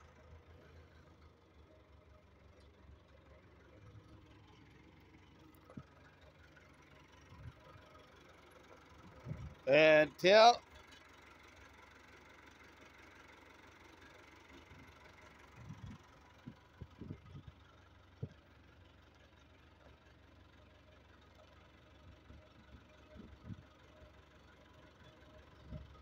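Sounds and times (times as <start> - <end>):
backhoe engine humming: 0.0 - 26.0.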